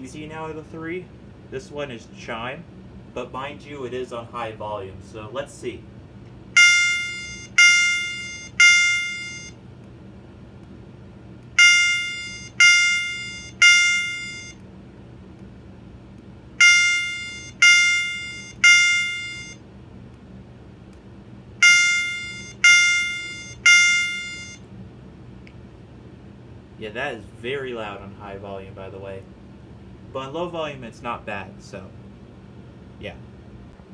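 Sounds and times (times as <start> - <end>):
fire alarm electronic chime: 6.6 - 9.6, 11.6 - 14.6, 16.6 - 19.6, 21.6 - 24.6.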